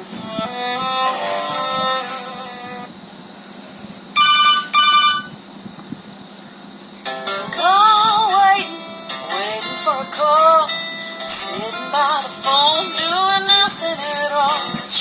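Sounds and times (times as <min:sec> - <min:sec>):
gliding voice-like ringtone melody: 0:04.2 - 0:05.3
string-like ringtone tune: 0:04.2 - 0:05.3
short phone ring tone: 0:04.2 - 0:05.4.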